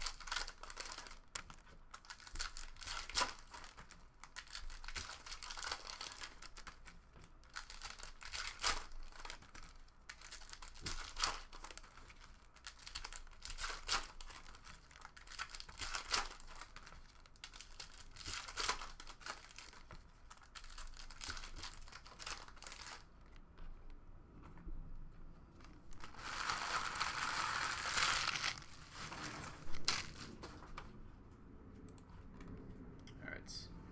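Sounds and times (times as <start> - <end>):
plastic wrappers tearing and crinkling: 0.0 - 23.4, 25.9 - 30.7
cards being handled: 25.6 - 30.9.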